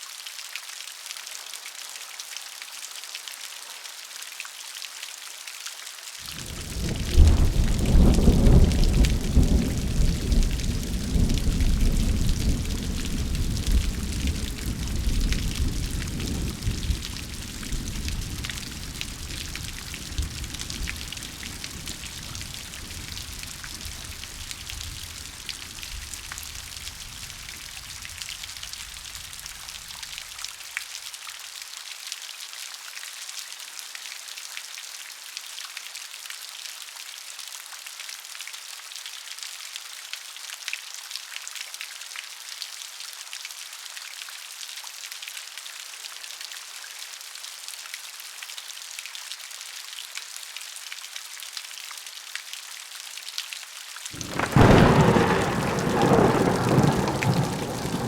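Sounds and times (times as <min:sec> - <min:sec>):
rain drops pattering: 0:00.0 - 0:58.0
loud thunderclap: 0:54.2 - 0:58.0.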